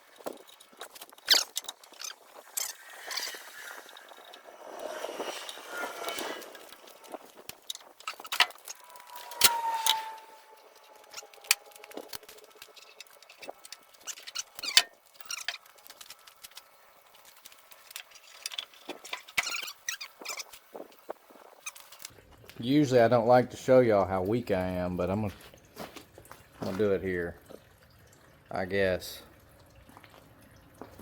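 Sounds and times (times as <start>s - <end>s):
short squeal: 8.0s - 15.5s.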